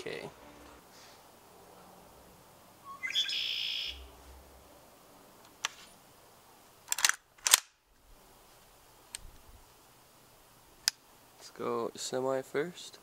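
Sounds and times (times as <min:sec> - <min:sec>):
short hiss: 0:00.5 - 0:01.3.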